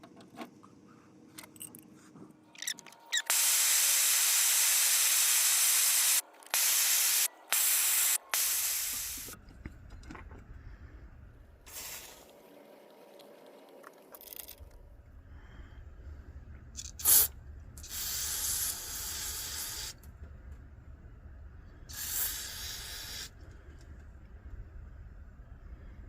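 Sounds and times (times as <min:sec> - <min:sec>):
spray can hissing: 0:03.2 - 0:09.4, 0:11.7 - 0:12.3, 0:16.8 - 0:20.0, 0:21.9 - 0:23.3.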